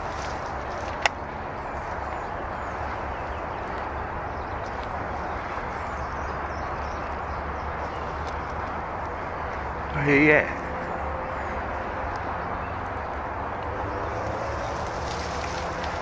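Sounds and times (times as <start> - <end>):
rustling: 14.2 - 16.0.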